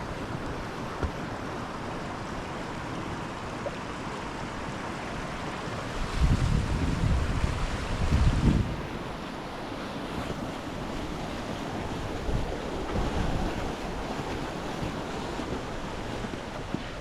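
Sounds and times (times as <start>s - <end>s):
waterfall rushing: 0.0s - 9.6s
wind buffeting microphone: 5.7s - 9.4s, 10.0s - 17.0s.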